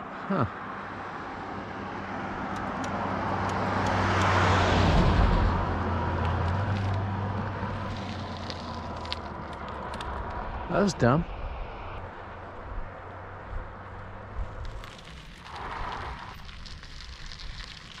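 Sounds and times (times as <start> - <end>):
vehicle passing on road: 0.0 - 18.0.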